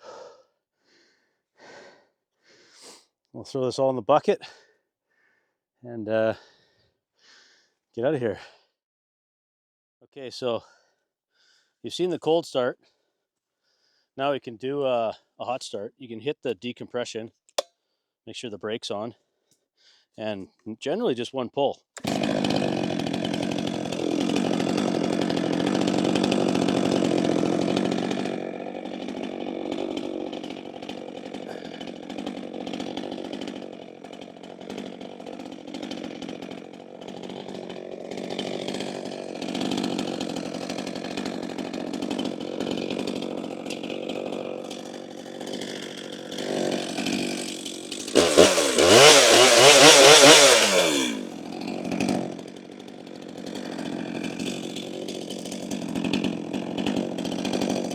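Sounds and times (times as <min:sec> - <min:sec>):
chainsaw idling and revving: 0:00.0 - 0:00.4, 0:22.0 - 0:57.9.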